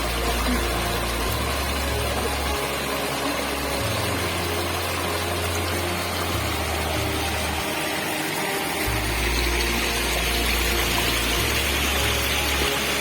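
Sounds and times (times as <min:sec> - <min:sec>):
low bass background music: 0:00.0 - 0:13.0
waterfall rushing: 0:00.0 - 0:13.0.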